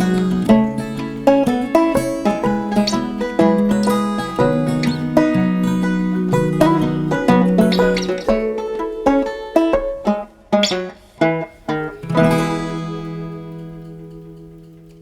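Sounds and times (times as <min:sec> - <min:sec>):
plucked string music: 0:00.0 - 0:15.0.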